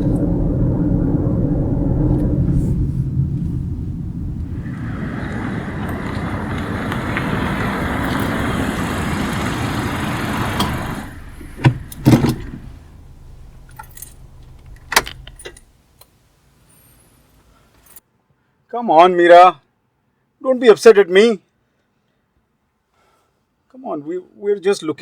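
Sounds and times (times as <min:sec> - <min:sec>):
car engine running: 0:02.1 - 0:15.4
loud thumps: 0:10.0 - 0:15.6
clicks and jingling: 0:13.6 - 0:15.7.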